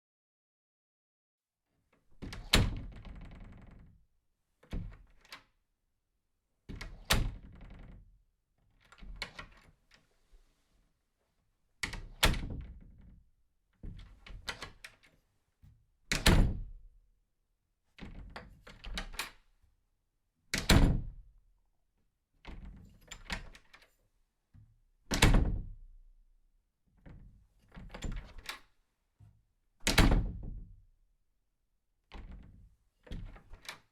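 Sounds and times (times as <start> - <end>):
door shutting with a thud: 2.2 - 3.2, 11.9 - 12.8, 16.1 - 16.8, 20.6 - 21.2, 25.1 - 25.8, 29.8 - 30.6.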